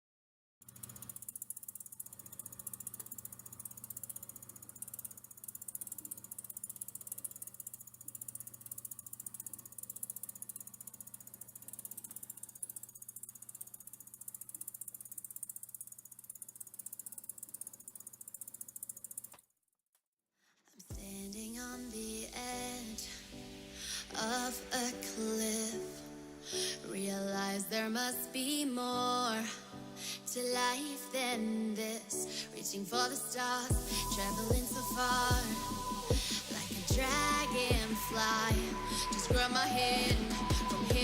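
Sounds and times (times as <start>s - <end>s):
song with sung melody and low beat: 20.9s - 26.1s, 32.6s - 41.0s.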